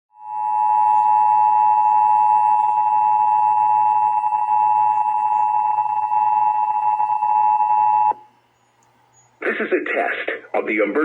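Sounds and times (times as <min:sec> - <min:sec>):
two-tone emergency alert signal: 0:00.1 - 0:08.2.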